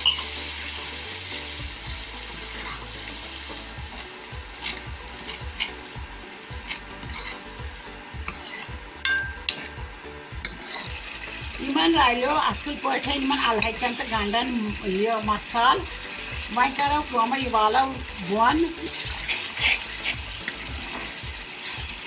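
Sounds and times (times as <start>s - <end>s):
metal spoon clink: 0.0s - 0.4s, 8.3s - 9.7s
spoon scraping a pan: 0.0s - 9.8s, 10.4s - 22.0s
meat sizzling in a pan: 0.0s - 22.0s.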